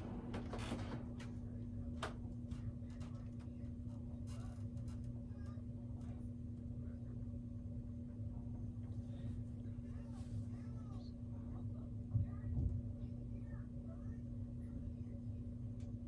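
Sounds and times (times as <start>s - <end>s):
ceiling fan motor humming: 0.0s - 16.0s.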